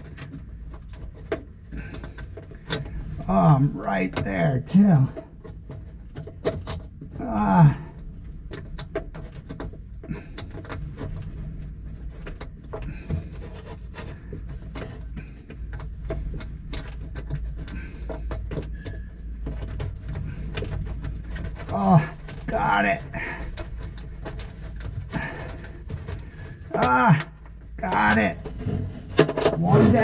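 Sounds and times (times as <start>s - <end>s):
steady background hum: 0.0s - 30.0s
person grunting: 7.2s - 7.9s, 26.8s - 28.4s, 29.6s - 30.0s.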